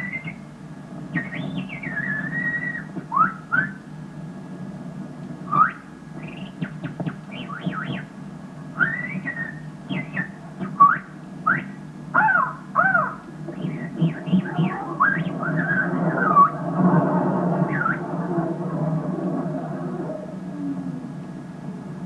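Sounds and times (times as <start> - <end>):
steady low hum: 0.0 - 22.0
person whistling bird calls: 1.2 - 3.8, 8.8 - 11.8.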